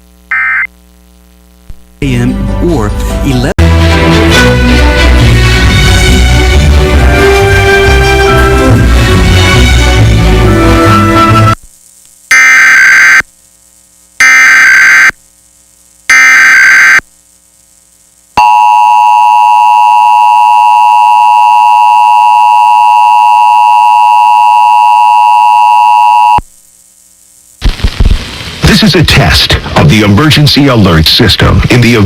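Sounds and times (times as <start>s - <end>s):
screeching digital data warble: 12.3s - 13.2s, 14.2s - 15.2s, 16.1s - 17.0s.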